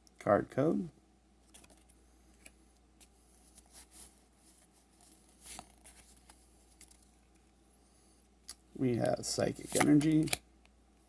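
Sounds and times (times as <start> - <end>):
trading cards clicking and rustling: 8.5 - 10.4.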